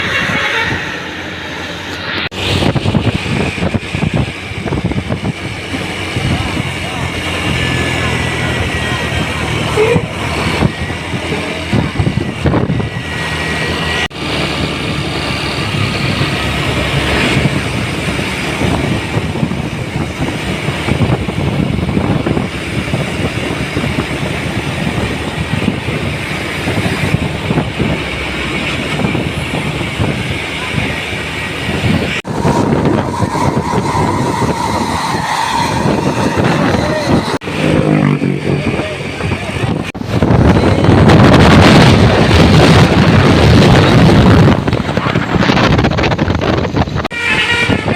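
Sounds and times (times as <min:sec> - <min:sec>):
steady high tone: 0:00.0 - 0:14.1, 0:31.4 - 0:39.9
heavy vehicles passing: 0:00.0 - 0:47.9.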